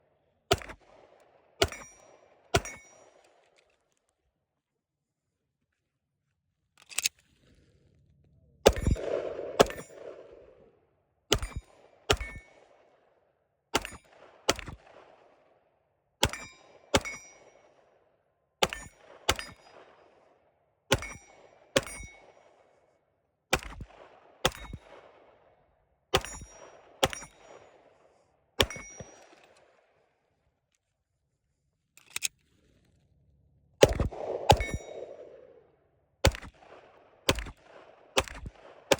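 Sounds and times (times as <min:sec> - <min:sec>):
pistol shots: 0:00.5 - 0:02.9, 0:08.7 - 0:10.7, 0:11.3 - 0:12.8, 0:13.8 - 0:15.5, 0:33.8 - 0:35.6, 0:36.2 - 0:38.9
metallic ring of steel targets: 0:01.6 - 0:03.1, 0:11.3 - 0:12.5, 0:13.8 - 0:14.1, 0:16.2 - 0:17.6, 0:18.6 - 0:19.7, 0:20.9 - 0:22.2, 0:26.2 - 0:27.7, 0:28.6 - 0:29.3, 0:33.8 - 0:35.4.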